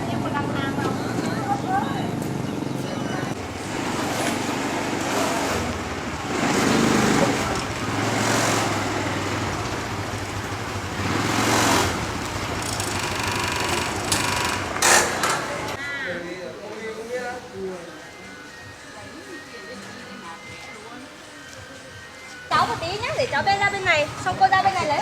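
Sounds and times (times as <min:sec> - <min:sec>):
steady engine hum: 0:00.0 - 0:15.8
vehicles passing: 0:00.0 - 0:15.8.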